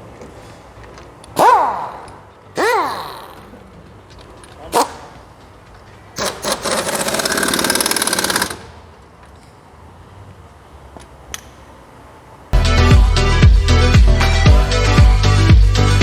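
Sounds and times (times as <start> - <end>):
impact wrench rattling: 1.3 - 8.9.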